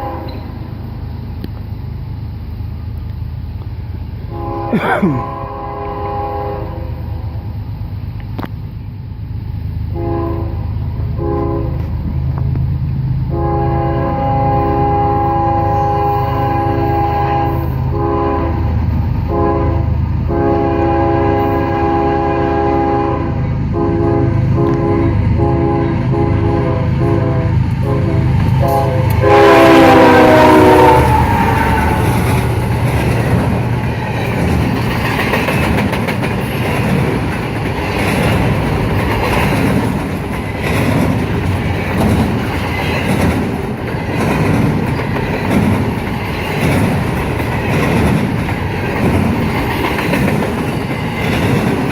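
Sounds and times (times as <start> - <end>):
locomotive horn blasts: 0.0 - 0.5, 4.3 - 7.0, 9.9 - 11.9, 13.3 - 32.3
train cars rumbling and clacking: 0.0 - 51.9.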